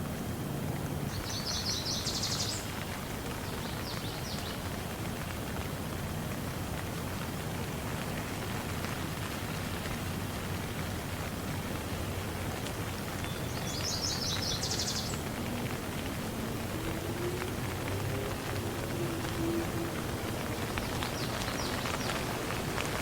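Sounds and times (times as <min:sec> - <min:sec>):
steady rain falling: 0:00.0 - 0:23.0.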